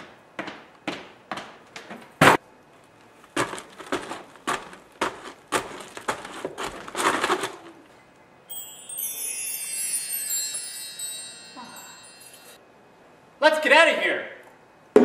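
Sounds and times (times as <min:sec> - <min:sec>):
foley props knocking and clattering: 0:03.4 - 0:07.7.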